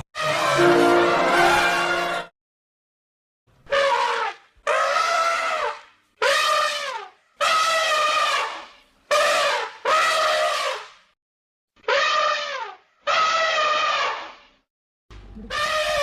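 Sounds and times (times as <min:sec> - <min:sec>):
elephant trumpeting: 0:00.2 - 0:02.3, 0:03.7 - 0:10.9, 0:11.8 - 0:14.4, 0:15.4 - 0:16.0.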